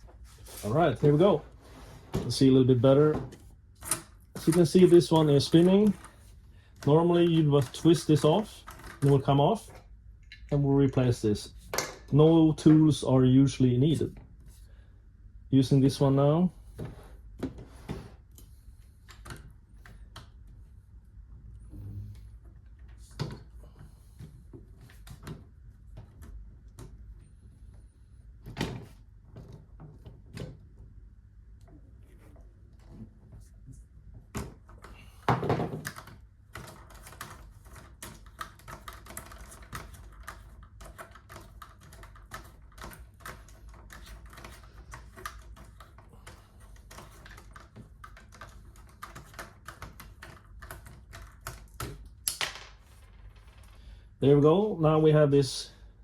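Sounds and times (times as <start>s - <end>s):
plastic parts clicking and knocking: 34.2s - 53.8s.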